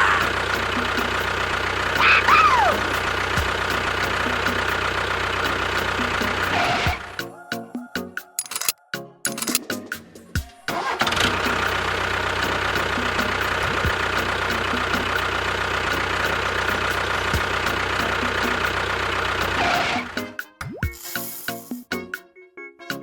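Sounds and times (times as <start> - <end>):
vehicle engine running: 0.0 - 6.5, 11.2 - 19.8.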